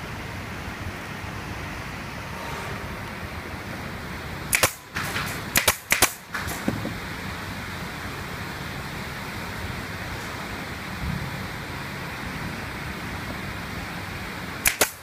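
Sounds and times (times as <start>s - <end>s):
sharp knocks: 4.5s - 7.0s.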